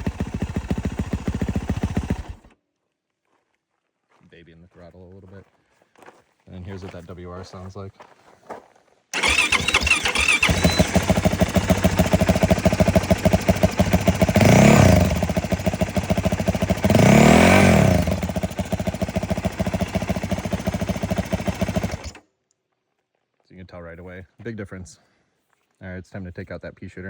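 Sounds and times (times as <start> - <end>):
starter whine: 0.0 - 2.5, 9.2 - 22.2
dirt bike engine idling and revving: 0.0 - 2.6, 9.2 - 22.2.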